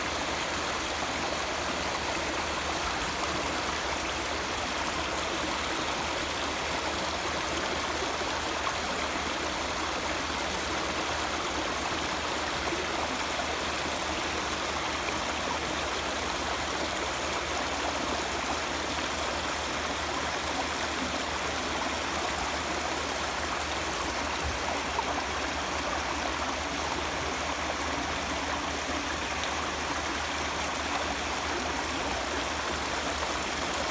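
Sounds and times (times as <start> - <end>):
stream flowing over rocks: 0.0 - 33.9.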